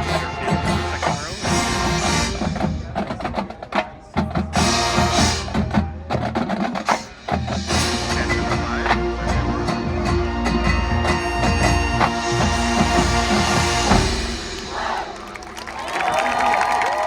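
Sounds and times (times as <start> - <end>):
marching band playing: 0.0 - 16.4
drumline percussion strikes: 0.0 - 16.7.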